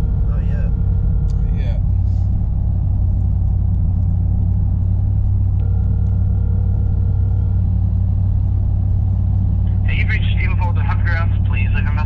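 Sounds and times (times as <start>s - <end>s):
engine and road rumble: 0.0s - 12.0s
faint steady tone: 5.2s - 8.1s.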